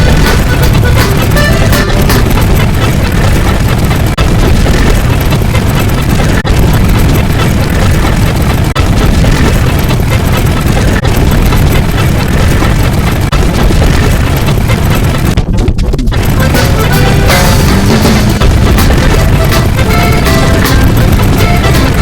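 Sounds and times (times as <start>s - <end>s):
loud rumbling explosion boom: 0.0s - 22.0s.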